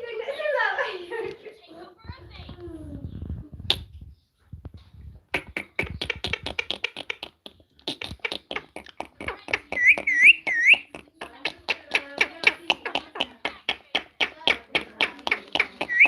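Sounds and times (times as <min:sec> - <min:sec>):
sharp clicks: 0:05.4 - 0:16.0
parrot whistling: 0:09.6 - 0:11.0.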